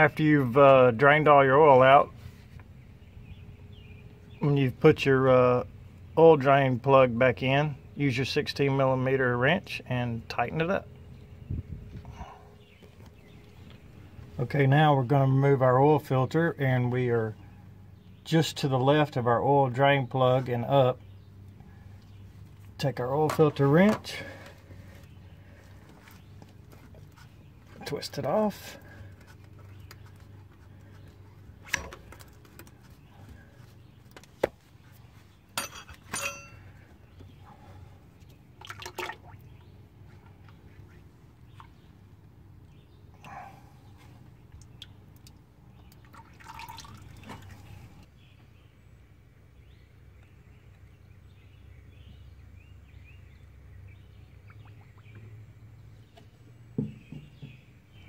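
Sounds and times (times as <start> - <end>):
faint birds chirping: 0.0 - 58.0
low steady hum: 0.0 - 58.0
oil trickling: 21.2 - 34.3, 35.0 - 42.6, 44.1 - 48.1
metallic clinks and knocks: 35.6 - 36.8
short knocks: 56.7 - 57.7.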